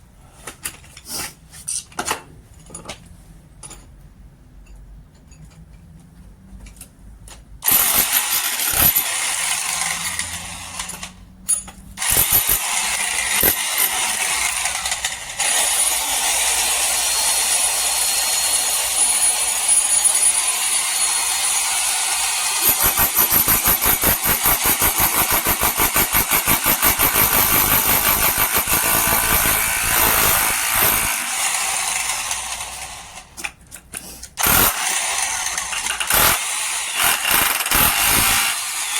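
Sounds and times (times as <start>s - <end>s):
demolition hammer chiselling: 7.6s - 11.0s, 12.0s - 33.0s, 34.4s - 38.9s.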